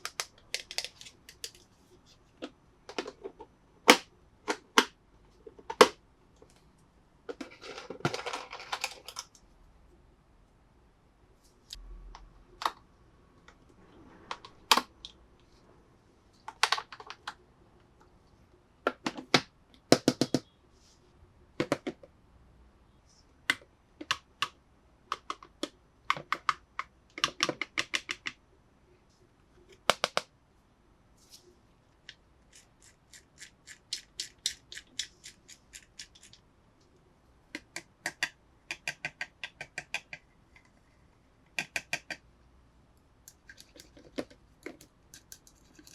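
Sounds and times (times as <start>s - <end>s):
plastic toy pieces clicking: 43.3s - 45.9s.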